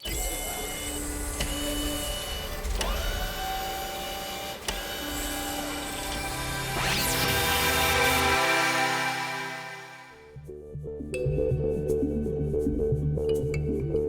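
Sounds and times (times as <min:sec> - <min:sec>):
small mechanism whirring: 0:00.0 - 0:08.8
sharp clicks: 0:00.1 - 0:08.4.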